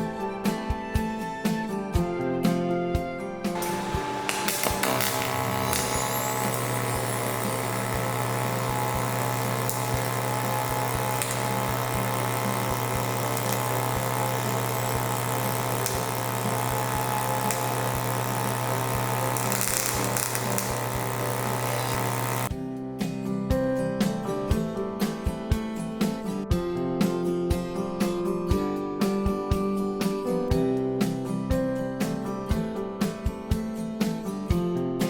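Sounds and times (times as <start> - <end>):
welding arc crackling buzz: 3.6 - 22.5.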